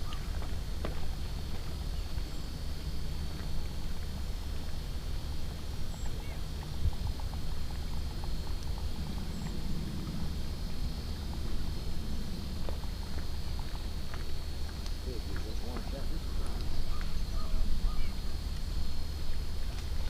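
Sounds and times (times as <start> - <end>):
faint ticks and crunches: 0.0 - 20.0
wind rumble on microphone: 0.0 - 20.0.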